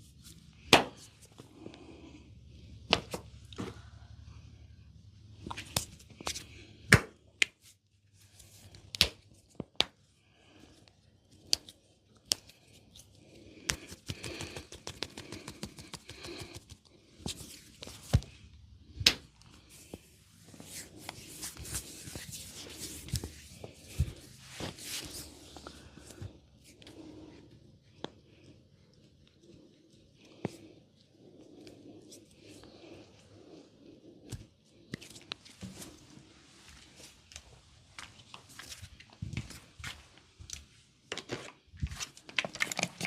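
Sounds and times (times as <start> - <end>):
skin rubbing: 13.7 - 18.0, 19.7 - 25.6.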